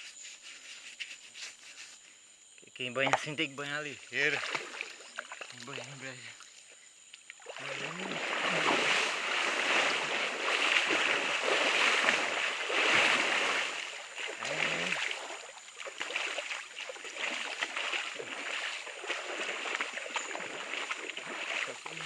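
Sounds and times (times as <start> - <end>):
water splashing and sloshing: 3.0 - 22.0.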